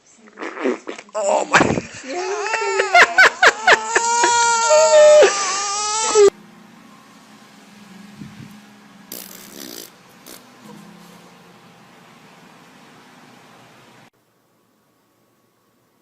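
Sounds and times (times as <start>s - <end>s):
baby wailing: 2.1s - 6.4s.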